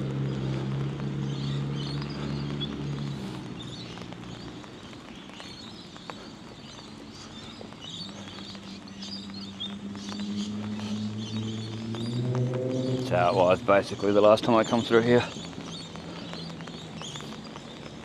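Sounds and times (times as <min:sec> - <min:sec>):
birds chirping: 0:00.0 - 0:18.0
steady rain falling: 0:00.0 - 0:18.0
traffic engine hum: 0:00.0 - 0:18.0.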